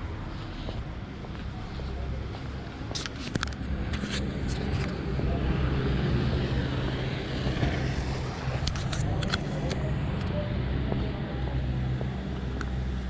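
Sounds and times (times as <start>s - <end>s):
vehicle engine running: 0.4s - 13.0s
vehicle passing: 3.6s - 13.0s.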